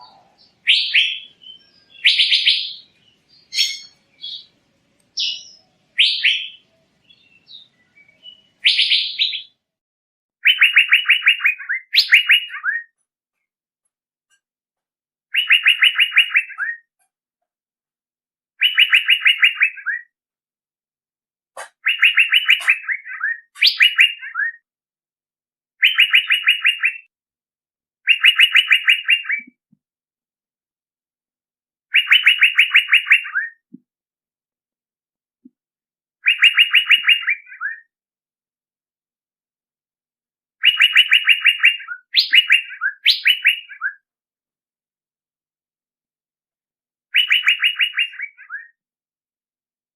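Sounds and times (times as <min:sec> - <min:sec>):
bird call rapid repeated notes: 0:10.4 - 0:12.9, 0:15.3 - 0:16.8, 0:18.6 - 0:20.1, 0:21.6 - 0:24.6, 0:25.8 - 0:27.1, 0:28.1 - 0:29.5, 0:31.9 - 0:33.6, 0:36.2 - 0:37.9, 0:40.6 - 0:44.0, 0:47.2 - 0:48.6.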